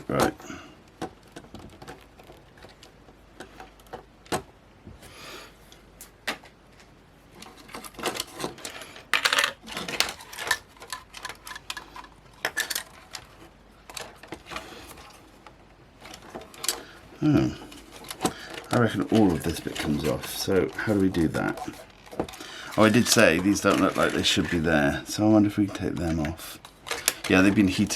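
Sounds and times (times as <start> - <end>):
plastic parts scraping: 0.0 - 27.9
camera parts clicking and clattering: 6.2 - 15.2.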